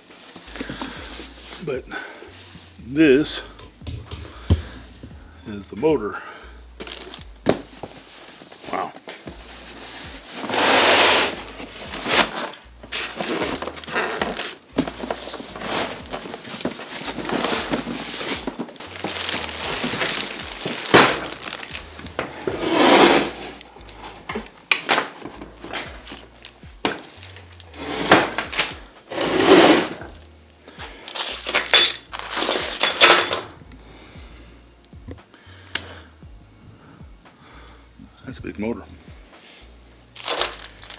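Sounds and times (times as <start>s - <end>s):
cardboard and packing rustling: 0.0s - 6.2s, 6.8s - 33.5s, 40.2s - 40.9s
quiet background music: 0.0s - 40.9s
knocks and clunks: 3.6s - 5.3s.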